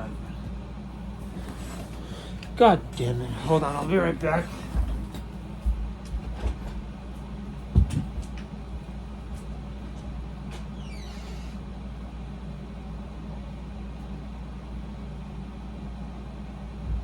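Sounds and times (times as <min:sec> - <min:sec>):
air conditioner humming: 0:00.0 - 0:17.0
brief high squeak: 0:10.8 - 0:11.6.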